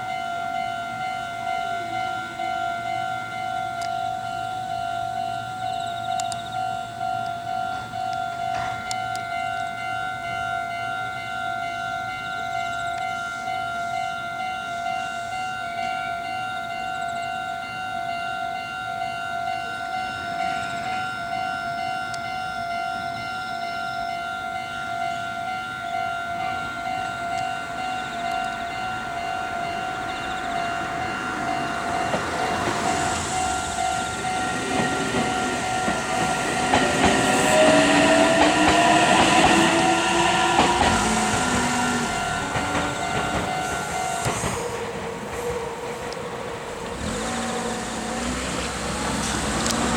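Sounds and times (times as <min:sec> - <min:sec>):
train wheel clatter: 0:00.0 - 0:14.3, 0:25.1 - 0:49.9
level crossing bell ringing: 0:00.0 - 0:44.6
rising train whine: 0:00.0 - 0:49.9.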